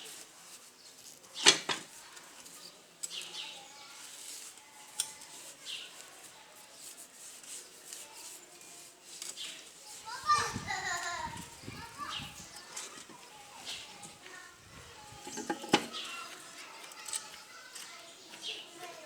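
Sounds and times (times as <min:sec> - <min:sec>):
metal tools clinking: 0:15.2 - 0:16.0.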